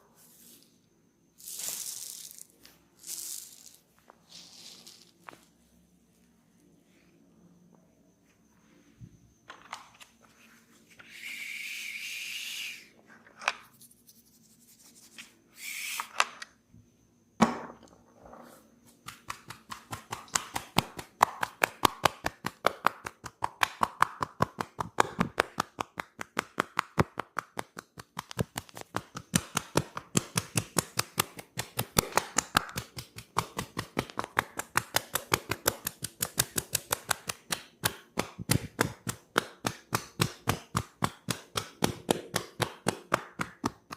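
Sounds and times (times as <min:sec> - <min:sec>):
hands tapping on head: 0:19.0 - 0:43.9.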